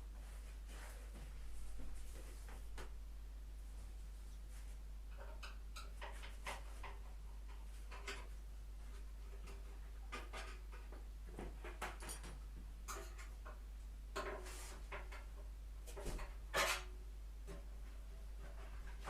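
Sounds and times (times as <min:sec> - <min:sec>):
steady low electrical hum: 0:00.0 - 0:19.0
tools clicking and knocking on metal: 0:09.3 - 0:15.4.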